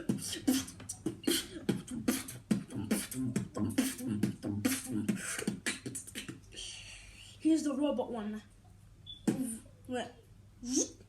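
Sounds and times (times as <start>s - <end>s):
person beatboxing: 0.0s - 6.6s, 9.3s - 9.6s.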